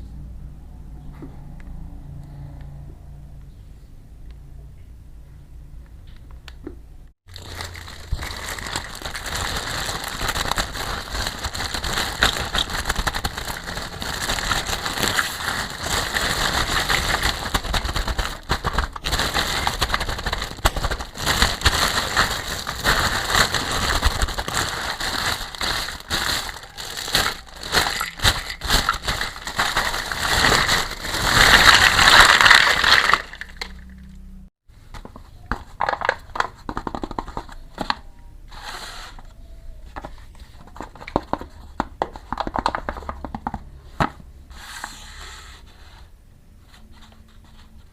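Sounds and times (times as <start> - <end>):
plastic packaging crinkling: 7.3 - 34.1.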